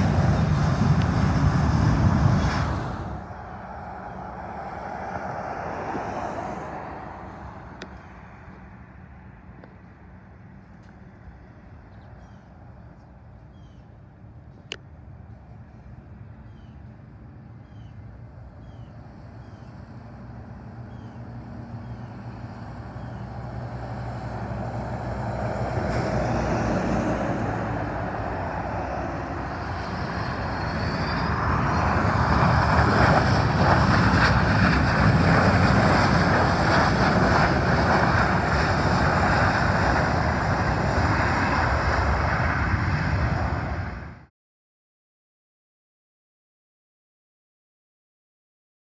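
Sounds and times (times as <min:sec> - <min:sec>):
engine whine rising in pitch: 0:00.0 - 0:09.4, 0:17.6 - 0:44.3
jet engines roaring: 0:00.0 - 0:44.3.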